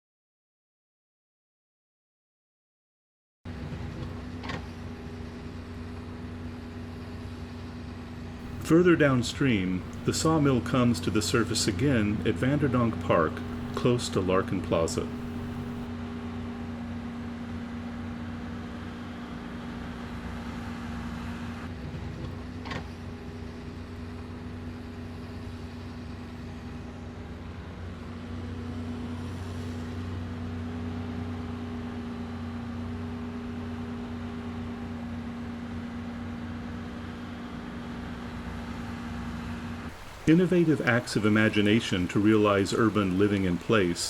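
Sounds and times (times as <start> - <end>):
urban traffic rumble: 3.5 - 44.0.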